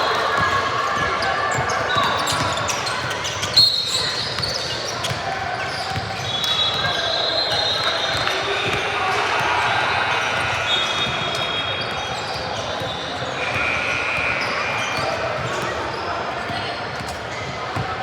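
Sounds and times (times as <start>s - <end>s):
voices in echoing hall: 0.0s - 18.0s
shoe squeaks: 1.5s - 8.8s, 10.6s - 17.5s.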